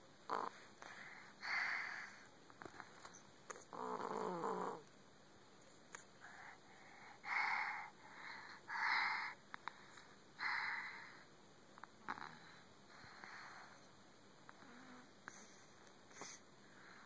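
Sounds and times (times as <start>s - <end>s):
baby snoring: 0.3s - 2.1s, 3.5s - 4.8s, 12.0s - 12.6s.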